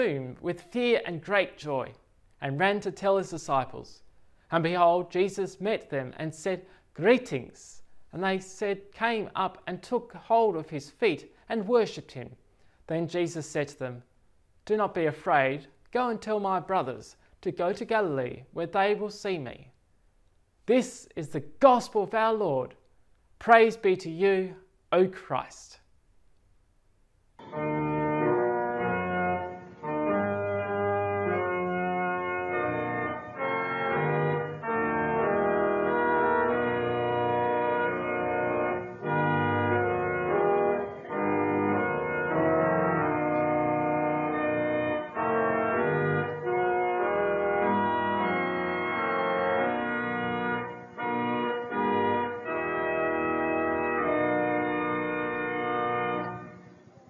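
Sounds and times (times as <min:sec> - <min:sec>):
church organ playing chords: 0:27.4 - 0:57.0.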